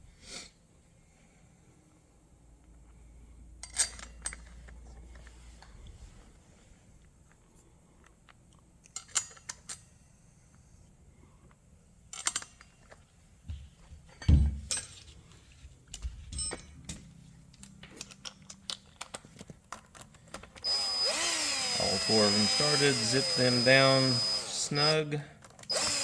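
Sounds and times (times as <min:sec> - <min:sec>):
metal bolts clicking and clinking: 0:03.6 - 0:05.2, 0:08.8 - 0:10.0, 0:12.1 - 0:13.0, 0:14.1 - 0:15.1, 0:15.9 - 0:20.6.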